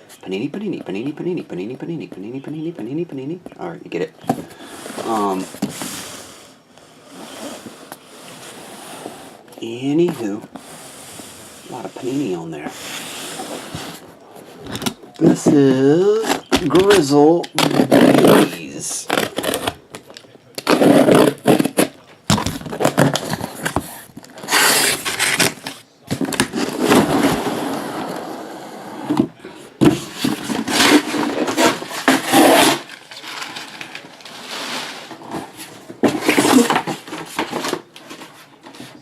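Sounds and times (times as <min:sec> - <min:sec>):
cardboard and tape tearing: 0:11.7 - 0:20.0, 0:20.6 - 0:28.4, 0:29.0 - 0:38.8.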